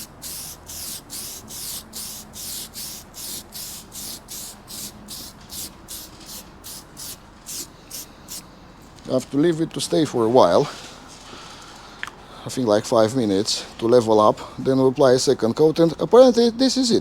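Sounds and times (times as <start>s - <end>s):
spray can hissing in bursts: 0.0s - 8.4s.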